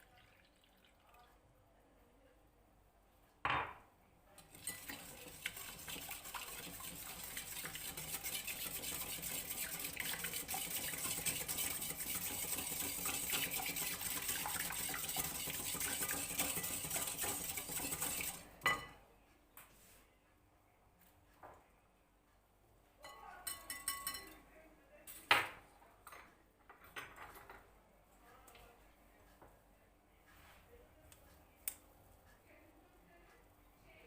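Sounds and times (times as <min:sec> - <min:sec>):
whisk beating in a bowl: 0:04.4 - 0:18.8.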